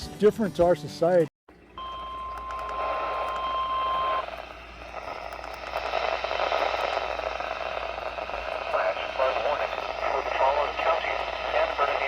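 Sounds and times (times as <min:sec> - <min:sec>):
steady alarm beep: 0:01.8 - 0:04.4
radio hiss: 0:02.6 - 0:12.0.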